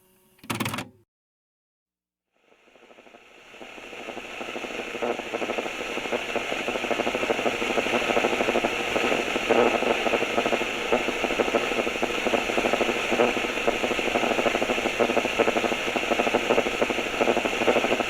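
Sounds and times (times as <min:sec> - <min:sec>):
cassette mechanism rattling whir: 0:00.0 - 0:01.0.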